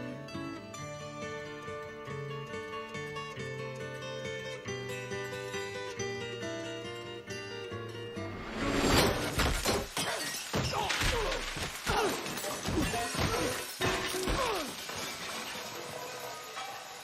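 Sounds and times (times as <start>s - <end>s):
crashes smashes and thuds: 8.4s - 16.2s.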